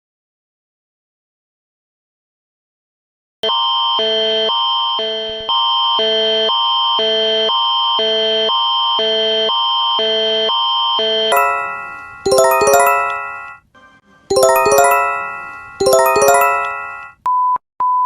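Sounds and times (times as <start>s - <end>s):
steady high tone: 11.3s - 13.6s, 14.3s - 17.2s.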